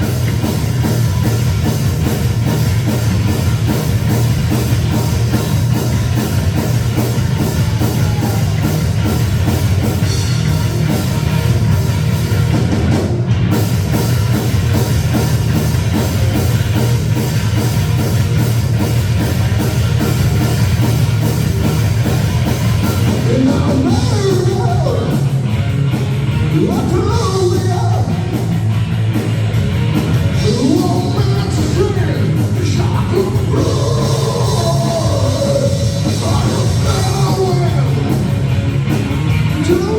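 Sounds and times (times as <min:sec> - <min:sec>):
rock band playing: 0:00.0 - 0:39.9
person singing: 0:30.4 - 0:38.3.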